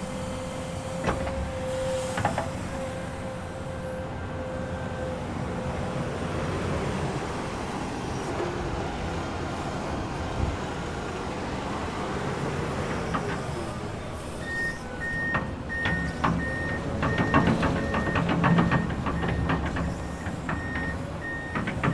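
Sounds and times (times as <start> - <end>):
travel alarm beeping: 14.4 - 21.9.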